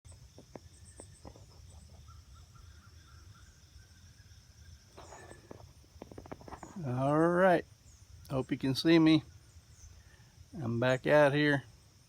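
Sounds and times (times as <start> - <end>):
high insect drone: 0.1 - 12.0.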